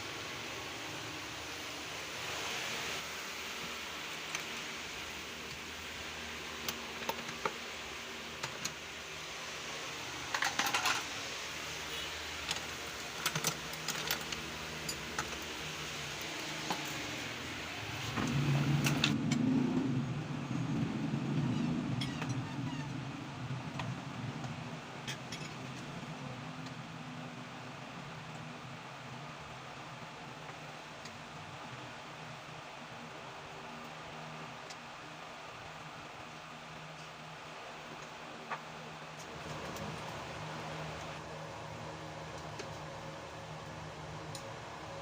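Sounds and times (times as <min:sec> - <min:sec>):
steady background hum: 0:00.0 - 0:45.0
metal parts and tools clinking: 0:10.3 - 0:11.2, 0:12.4 - 0:17.1.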